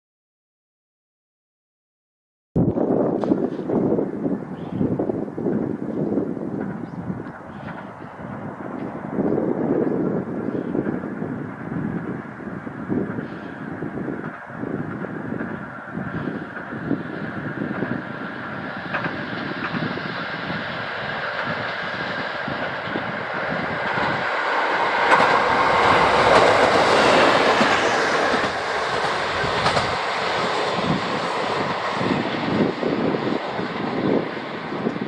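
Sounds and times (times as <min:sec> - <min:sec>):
train wheels clattering on rails: 0:06.5 - 0:10.1, 0:13.0 - 0:35.0.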